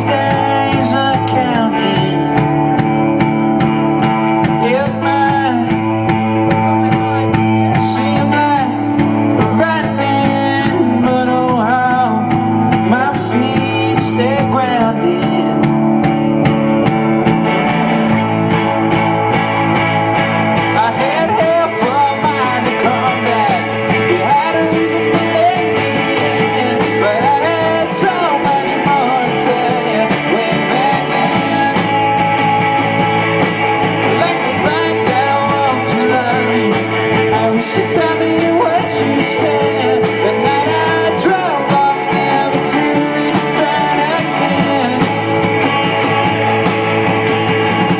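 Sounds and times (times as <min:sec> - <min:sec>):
live rock band playing: 0:00.0 - 0:47.9
person singing lead vocals: 0:00.0 - 0:47.9.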